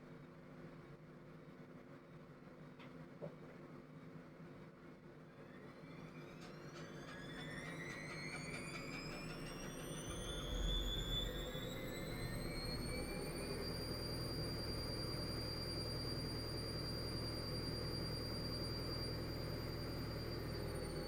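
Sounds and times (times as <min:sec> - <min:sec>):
washing machine motor whine: 0:05.0 - 0:21.0.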